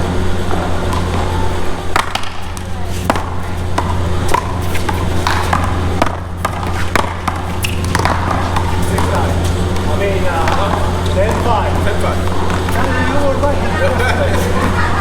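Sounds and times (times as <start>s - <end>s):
ball slapping off wall: 1.9s - 12.9s
paddles striking rubber ball: 1.9s - 12.9s.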